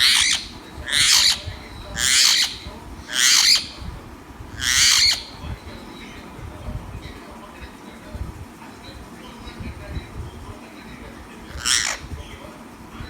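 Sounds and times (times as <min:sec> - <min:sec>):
parrot squawking: 0:00.0 - 0:03.9, 0:04.5 - 0:06.0, 0:11.4 - 0:12.2.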